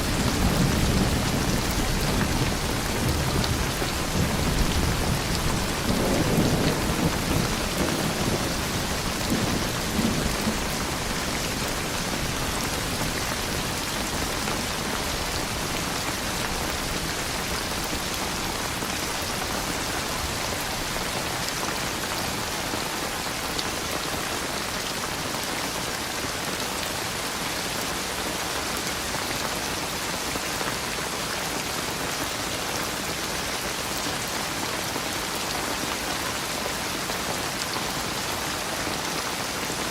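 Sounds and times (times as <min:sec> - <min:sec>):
low rumble of thunder: 0:00.0 - 0:21.2
steady rain falling: 0:00.0 - 0:39.9.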